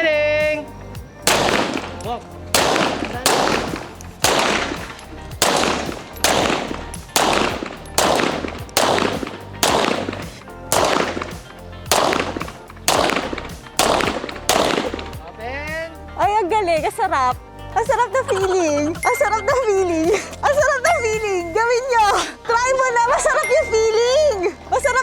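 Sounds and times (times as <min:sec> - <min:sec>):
single gunshots: 0:01.3 - 0:15.2.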